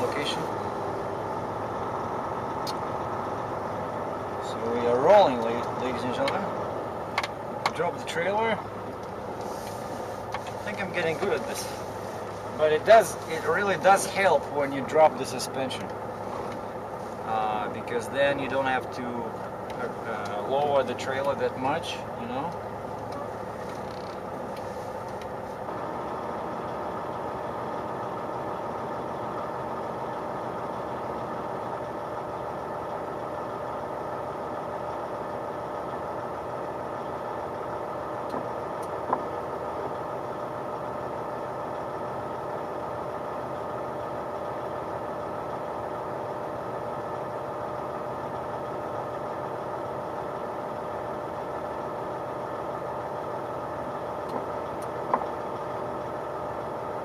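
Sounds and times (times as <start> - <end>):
truck diesel engine running: 0.0 - 57.0
sharp click: 2.6 - 2.8.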